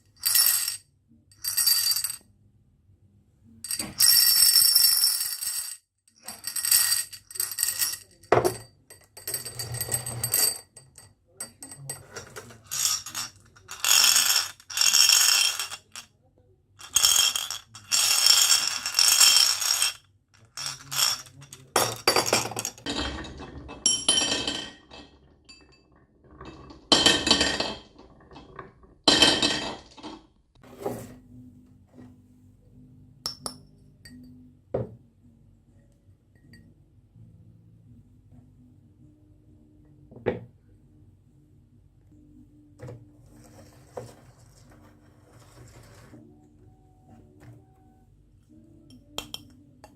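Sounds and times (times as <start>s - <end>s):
marbles rolling down wooden run: 12.6s - 16.0s, 16.8s - 22.9s.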